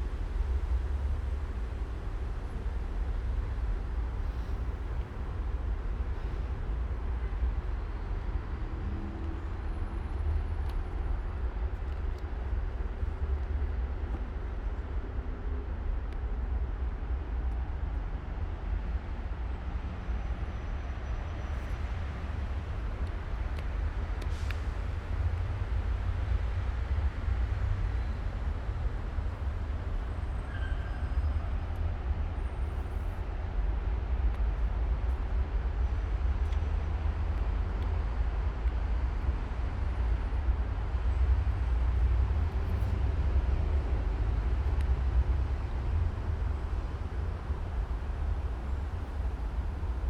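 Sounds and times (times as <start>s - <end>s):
low outdoor rumble: 21.5s - 50.0s.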